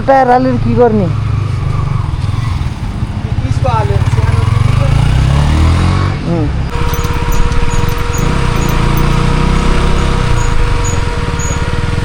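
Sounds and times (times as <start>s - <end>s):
motorcycle engine running: 0.0s - 5.6s, 6.7s - 12.0s
road and wind noise: 0.0s - 12.0s
thin whine: 6.7s - 12.0s.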